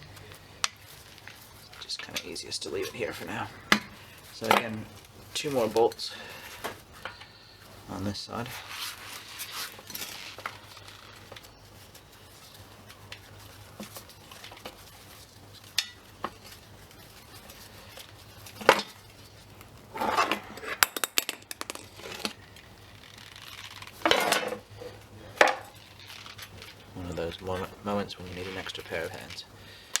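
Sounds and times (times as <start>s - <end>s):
metal clinks and knocks: 20.8s - 22.4s.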